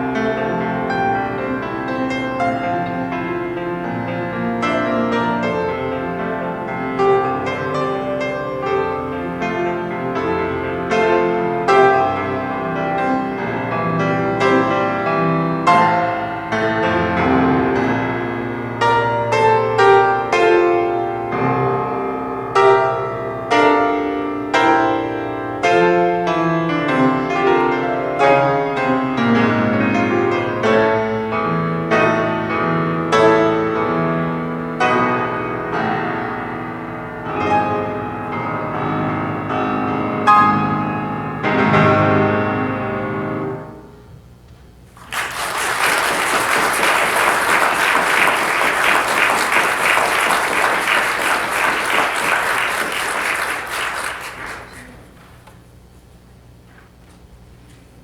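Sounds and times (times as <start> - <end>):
audience applause: 45.0 - 55.5.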